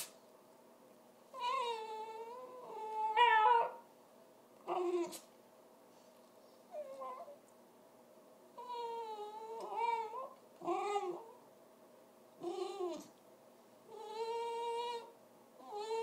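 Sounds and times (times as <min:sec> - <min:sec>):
dog whining: 0:01.3 - 0:03.9, 0:04.6 - 0:05.3, 0:06.7 - 0:07.4, 0:08.6 - 0:11.4, 0:12.4 - 0:13.2, 0:13.9 - 0:16.0.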